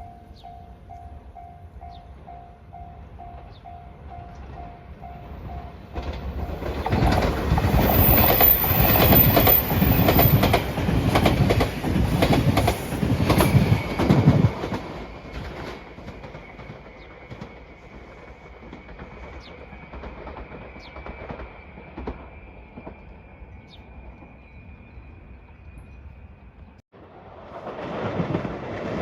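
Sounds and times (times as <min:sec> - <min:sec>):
electric train passing: 0:00.0 - 0:29.0
wheels clacking over rail joints: 0:05.4 - 0:22.3.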